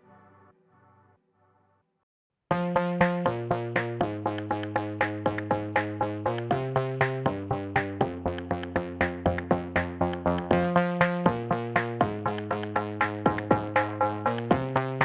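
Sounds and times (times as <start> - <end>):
electronic music: 2.5 - 15.0.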